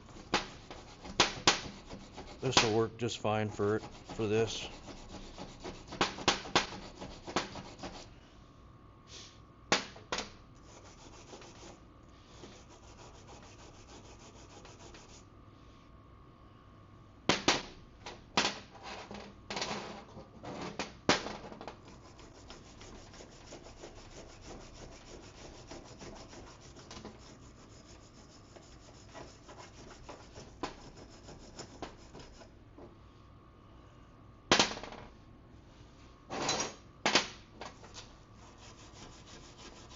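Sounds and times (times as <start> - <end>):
wire brush scrubbing metal: 0.0 - 2.8, 3.4 - 8.1, 21.8 - 32.5, 38.4 - 39.9.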